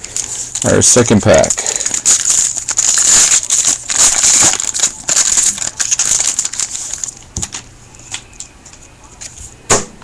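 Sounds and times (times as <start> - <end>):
foil wrapper tearing and crinkling: 0.0 - 7.5.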